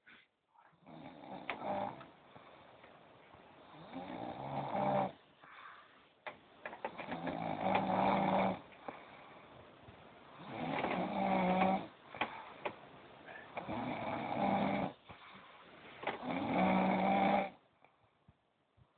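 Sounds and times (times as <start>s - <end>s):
man snoring: 0.8s - 2.1s, 3.6s - 5.2s, 6.9s - 8.7s, 10.4s - 12.3s, 13.5s - 15.0s, 16.2s - 17.6s.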